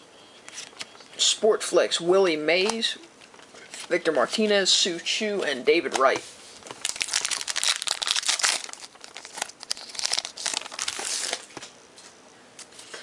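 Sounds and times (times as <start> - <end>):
wrapper crinkling and tearing: 6.6 - 11.6.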